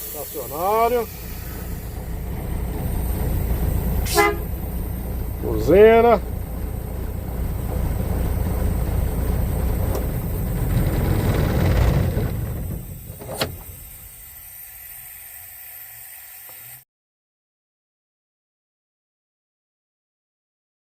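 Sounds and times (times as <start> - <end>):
diesel truck engine rumbling: 0.0 - 15.1.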